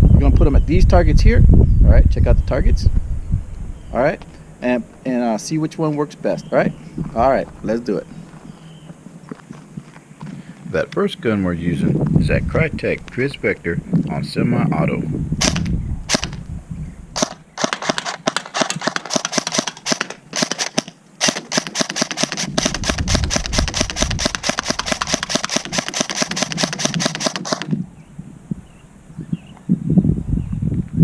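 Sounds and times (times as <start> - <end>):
airsoft gun firing: 15.4 - 16.4, 17.2 - 27.8.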